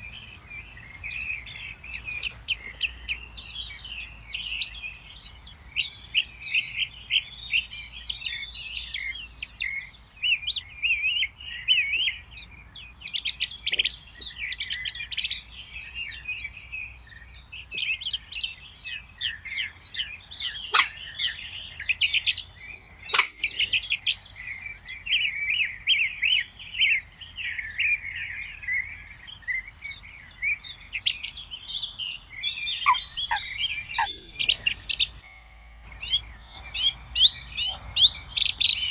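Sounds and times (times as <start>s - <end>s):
songbirds chirping chorus: 0.0s - 38.9s
sharp clicks: 20.8s - 21.0s.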